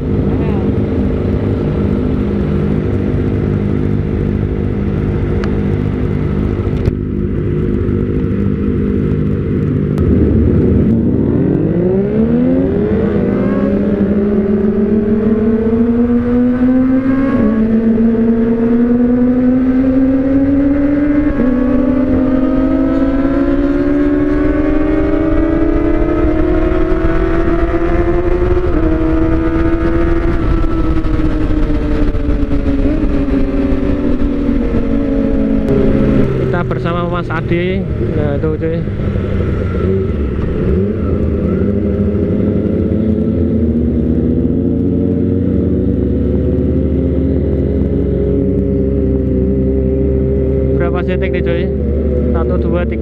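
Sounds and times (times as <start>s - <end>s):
motorcycle engine revving: 0.0s - 53.0s.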